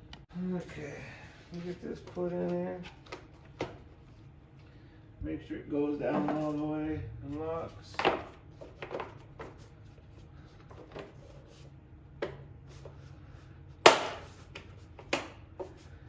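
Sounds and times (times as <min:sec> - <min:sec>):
loud plastic snap: 0:13.9 - 0:14.3.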